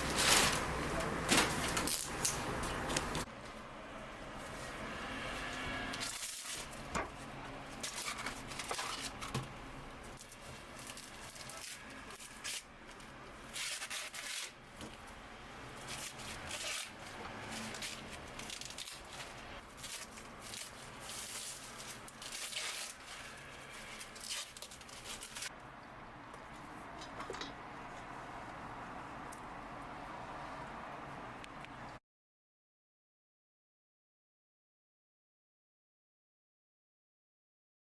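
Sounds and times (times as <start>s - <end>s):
rustling and crinkling: 0.0s - 3.3s, 6.0s - 25.6s.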